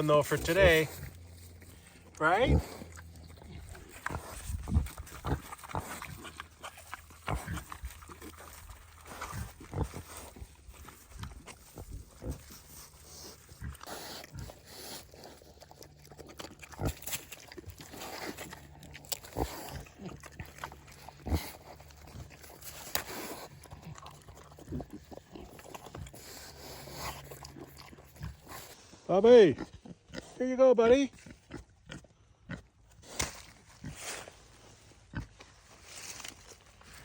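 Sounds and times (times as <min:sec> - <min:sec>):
pig grunts: 0:00.0 - 0:01.2, 0:02.1 - 0:10.5, 0:11.7 - 0:28.8, 0:29.5 - 0:32.7
pig chomping and smacking: 0:00.0 - 0:28.8.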